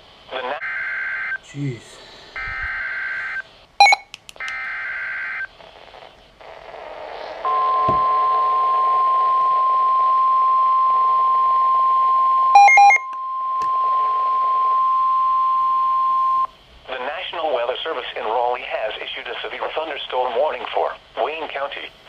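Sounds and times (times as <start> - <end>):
steady warning alarm tone: 2.4 - 4.0, 7.5 - 16.5
short electronic beeps: 3.2 - 4.1, 12.6 - 13.2.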